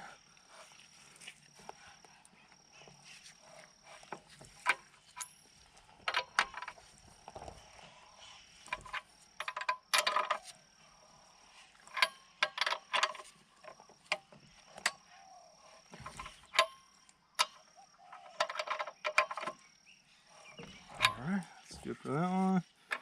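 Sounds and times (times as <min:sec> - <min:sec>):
wrench clicks and clanks: 0:06.0 - 0:06.8, 0:08.7 - 0:10.5, 0:11.9 - 0:15.1, 0:17.4 - 0:19.6, 0:20.7 - 0:21.3.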